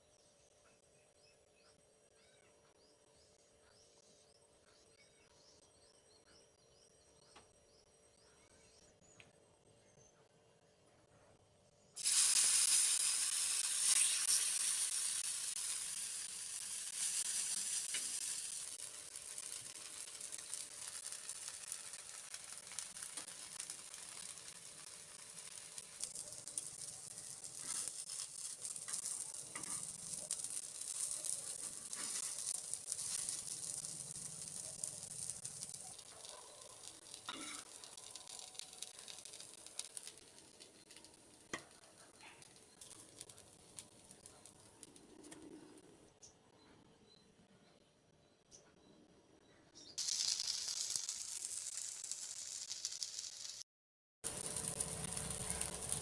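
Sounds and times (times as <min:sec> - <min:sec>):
food sizzling in hot oil: 0:12.0 - 0:44.8, 0:50.0 - 0:56.0.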